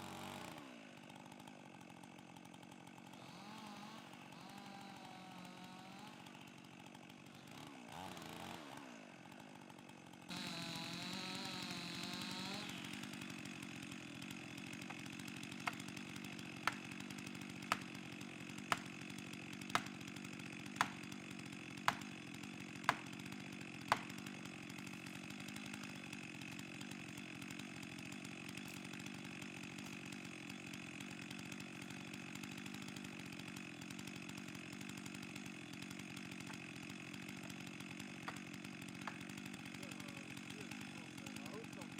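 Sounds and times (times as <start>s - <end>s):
chainsaw running: 0.0s - 41.9s.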